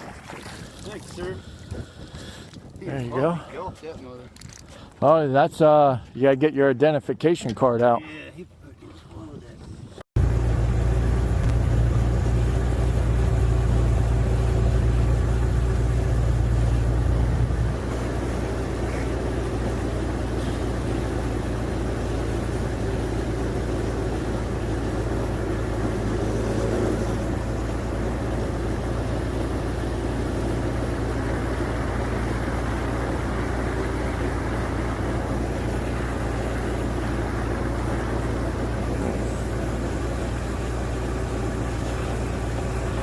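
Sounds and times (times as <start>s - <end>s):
boat motor rumbling: 9.6s - 43.0s.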